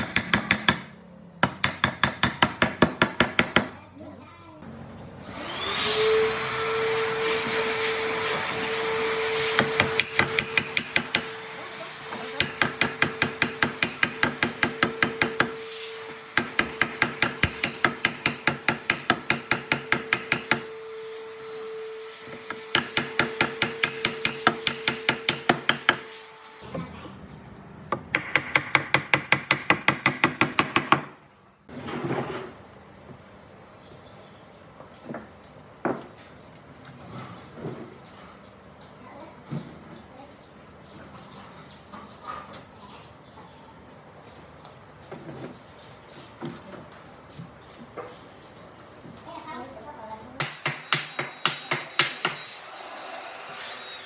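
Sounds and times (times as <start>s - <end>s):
light hammering on wood: 0.0s - 3.8s, 50.4s - 52.4s.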